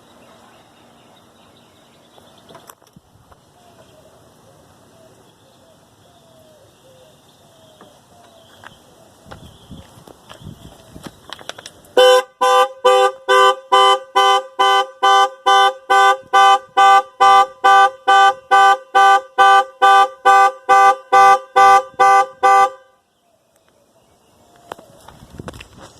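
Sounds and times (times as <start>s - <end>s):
two-tone car horn blasts: 12.0s - 23.1s.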